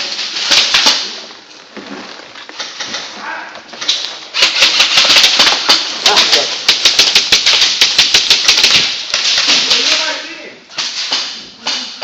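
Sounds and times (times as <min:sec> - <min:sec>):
airsoft guns firing: 0:00.0 - 0:01.1, 0:03.8 - 0:12.0.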